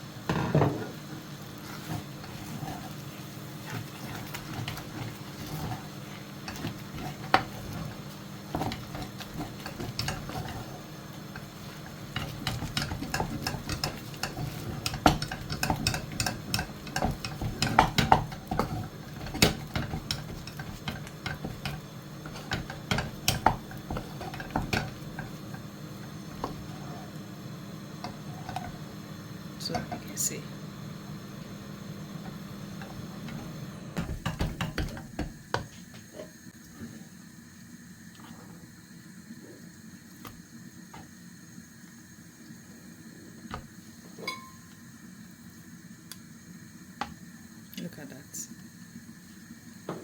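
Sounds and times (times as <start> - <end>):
utensil scraping and knocking pot: 0.3 - 27.2, 28.0 - 28.9, 32.2 - 36.3.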